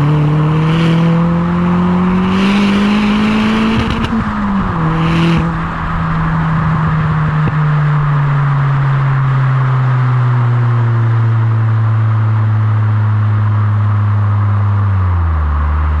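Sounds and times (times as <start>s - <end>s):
car exhaust note: 0.0s - 16.0s
road noise: 0.0s - 16.0s.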